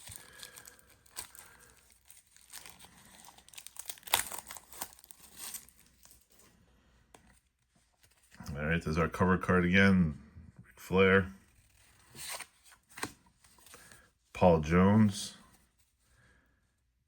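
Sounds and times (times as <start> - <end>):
card pack wrapper tearing: 0.0 - 6.3
wrapper crinkling: 0.0 - 6.3.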